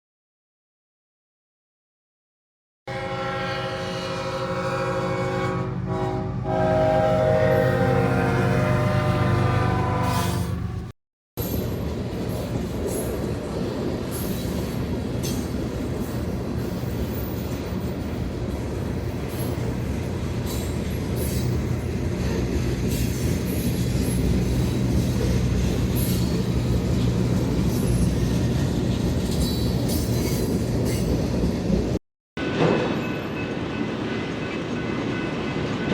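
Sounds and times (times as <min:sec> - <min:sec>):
freight train wheels rumbling: 0:03.6 - 0:35.9
wheel clicks and squeals: 0:27.6 - 0:31.4.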